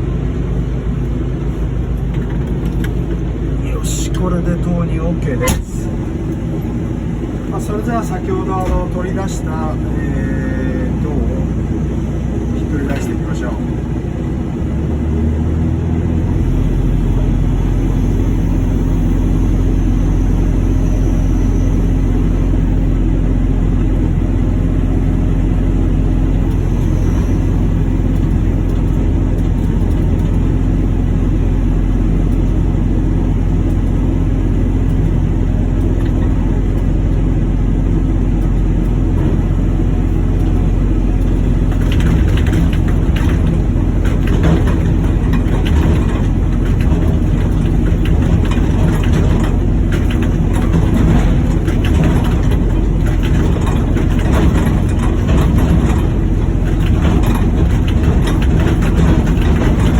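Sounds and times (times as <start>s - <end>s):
burner and blower droning: 0.0s - 59.9s
clicks and rattles: 40.4s - 59.9s.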